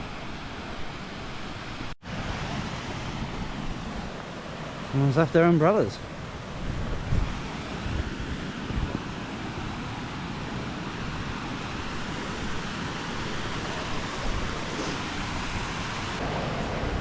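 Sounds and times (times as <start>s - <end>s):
mountain river rushing: 0.0s - 17.0s
wind buffeting microphone: 5.8s - 17.0s.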